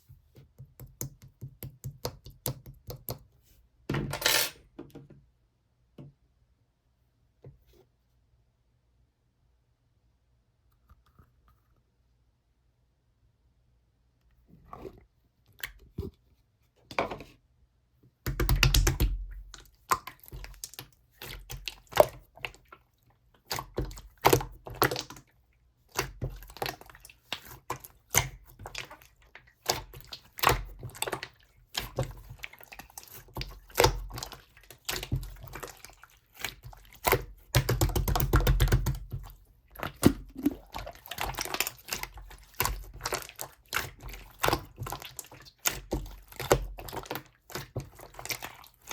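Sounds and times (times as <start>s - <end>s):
slime squishing and popping: 29.6s - 48.9s.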